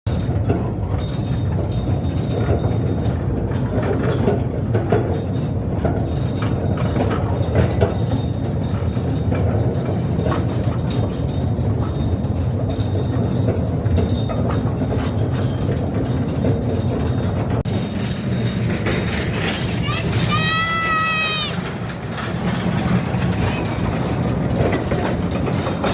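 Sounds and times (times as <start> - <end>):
locomotive rumble: 0.1 - 25.9
wheels and couplings rattling: 0.1 - 25.9.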